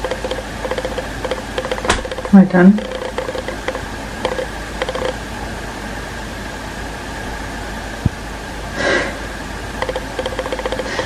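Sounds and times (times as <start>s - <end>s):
steady background hum: 0.0s - 11.0s
sharp knock: 1.9s - 2.3s
faint rapid clicking: 9.8s - 11.0s.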